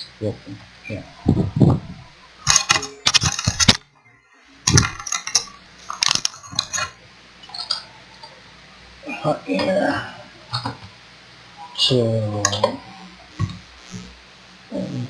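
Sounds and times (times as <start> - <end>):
metal tools clinking on workbench: 4.7 - 7.8.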